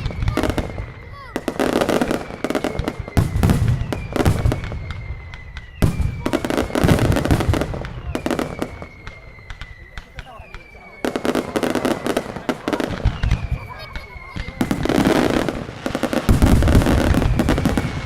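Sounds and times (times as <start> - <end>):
firecrackers banging: 0.0 - 18.0
faint high whistling tone: 2.3 - 6.6, 7.8 - 12.0.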